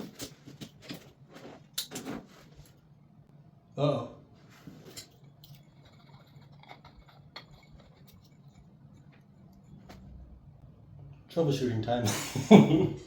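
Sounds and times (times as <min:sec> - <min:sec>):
low steady hum: 0:00.0 - 0:13.0
small things clicking and scraping: 0:04.8 - 0:10.2.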